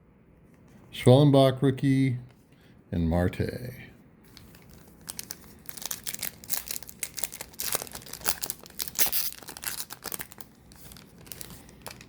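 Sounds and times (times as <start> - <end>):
foil wrapper crinkling and tearing: 4.3 - 12.0.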